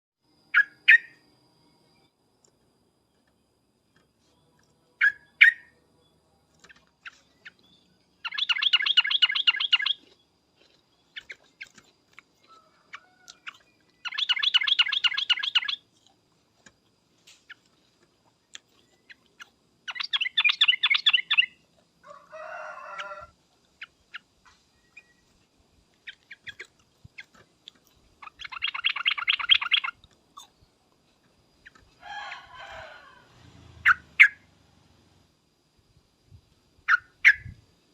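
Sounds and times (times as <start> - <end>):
bird chirps: 0.5 - 2.2, 3.9 - 16.0, 18.4 - 21.6, 23.8 - 30.8, 33.7 - 34.5, 36.9 - 37.6
bulbul chattering calls: 8.2 - 10.0, 13.4 - 15.8, 19.8 - 21.6, 28.2 - 30.0.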